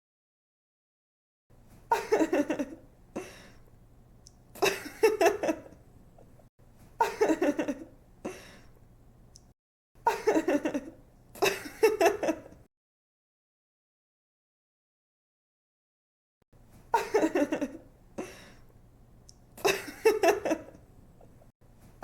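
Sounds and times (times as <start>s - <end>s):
woman giggling: 1.9s - 3.4s, 4.6s - 5.8s, 7.0s - 8.4s, 10.1s - 12.6s, 16.9s - 18.4s, 19.6s - 20.8s.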